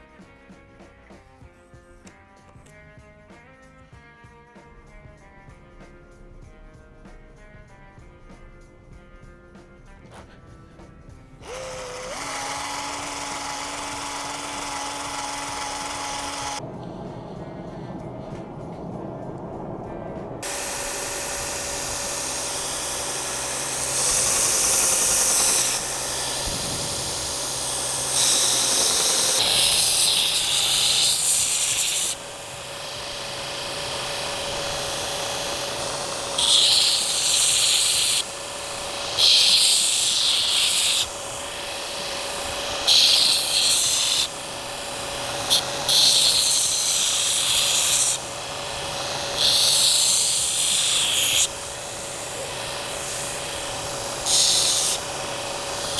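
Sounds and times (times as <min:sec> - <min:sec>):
power grinder whine: 0:00.0 - 0:55.9
knife blade hissing on grinder: 0:20.4 - 0:55.9.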